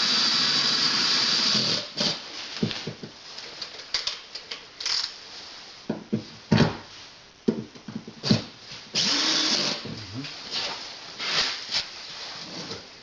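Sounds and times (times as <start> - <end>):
power drill short burst: 9.0 - 9.8.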